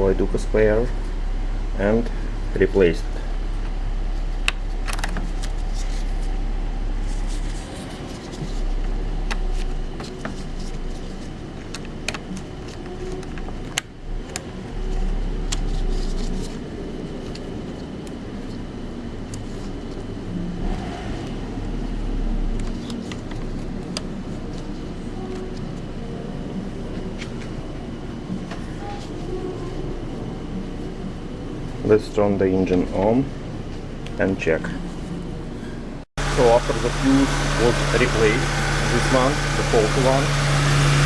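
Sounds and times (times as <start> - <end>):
low rumble: 19.7 - 22.8.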